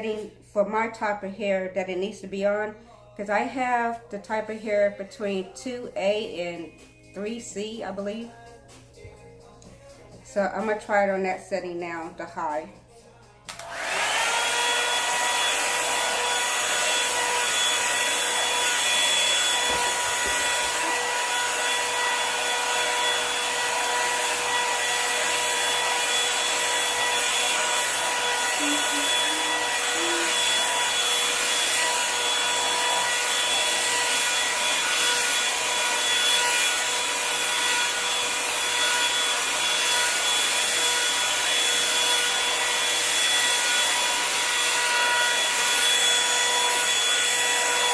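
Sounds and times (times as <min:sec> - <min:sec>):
hair dryer motor whine: 0:13.4 - 0:47.9.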